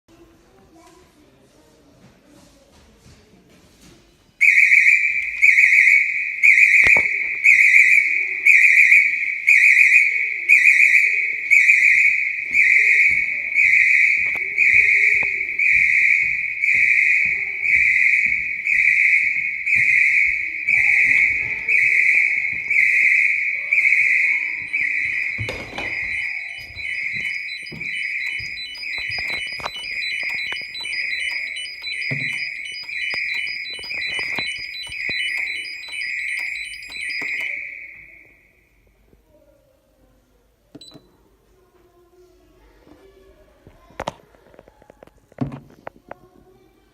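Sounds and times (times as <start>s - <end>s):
fire alarm pulsing tone: 4.4s - 38.8s.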